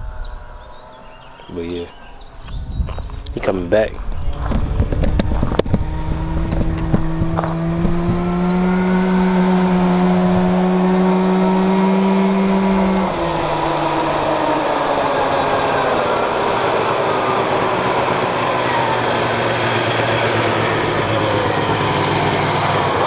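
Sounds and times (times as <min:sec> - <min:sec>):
go-kart engine running hard: 0:04.2 - 0:23.0.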